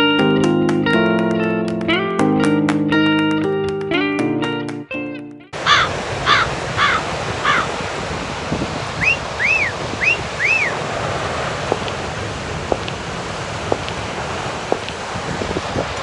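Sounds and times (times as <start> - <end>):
waterfall rushing: 5.6 - 16.0
bird calls: 5.7 - 7.8, 9.0 - 10.8.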